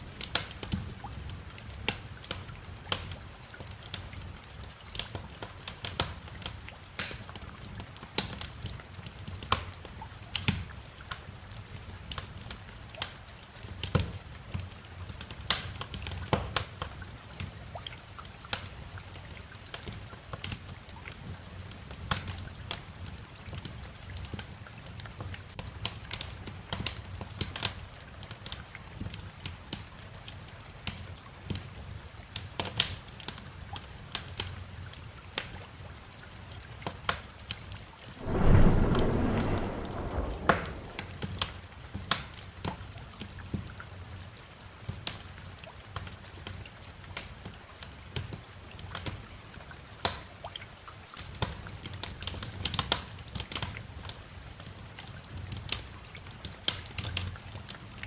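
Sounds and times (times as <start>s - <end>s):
rain: 0.0s - 24.8s, 38.2s - 41.8s
wood fire crackling and popping: 38.2s - 41.4s
thunder rumbling: 38.2s - 41.6s.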